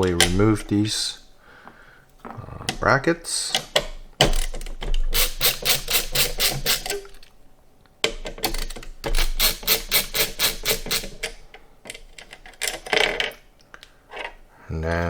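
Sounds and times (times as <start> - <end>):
screwdriver clicking: 3.5 - 7.3, 8.0 - 12.8.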